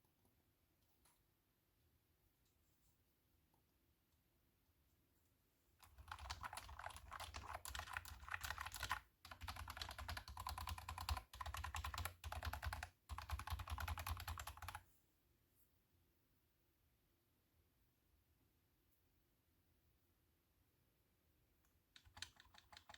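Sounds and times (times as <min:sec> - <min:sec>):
fast keyboard typing: 0:05.8 - 0:14.8, 0:22.0 - 0:22.9.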